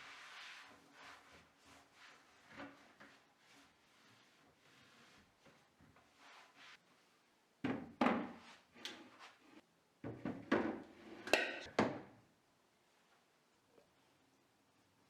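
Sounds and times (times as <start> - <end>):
kitchen items knocking and clattering: 10.0 - 12.2.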